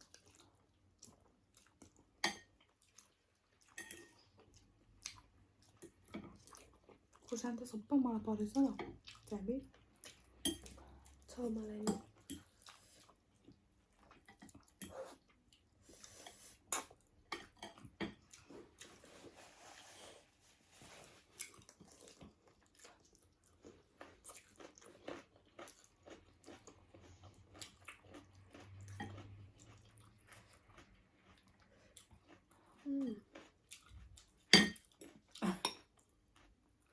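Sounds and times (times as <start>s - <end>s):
people chewing and biting: 21.2s - 36.9s.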